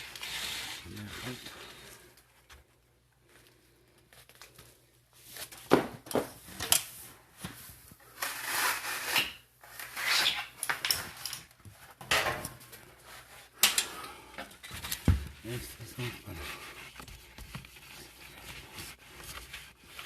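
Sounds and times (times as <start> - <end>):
tools scraping on ductwork: 8.0 - 15.0.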